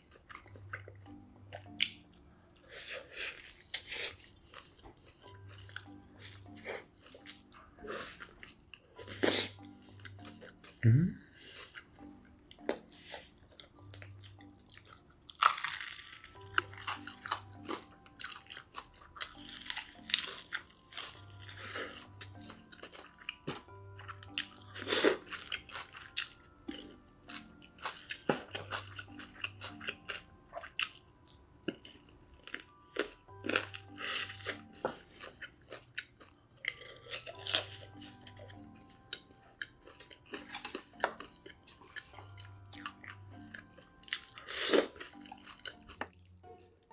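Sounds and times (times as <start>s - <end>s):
soft background music: 0.0s - 46.9s
crunchy bites and chewing: 14.8s - 31.1s, 31.7s - 43.2s.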